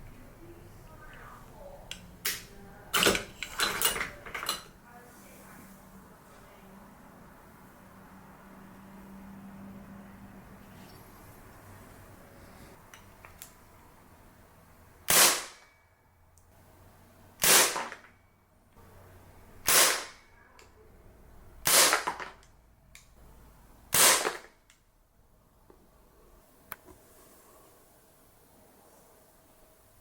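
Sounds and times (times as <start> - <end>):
airsoft pistol shots: 15.1 - 15.6, 17.4 - 18.1, 19.6 - 20.2, 21.6 - 22.3, 23.9 - 24.5.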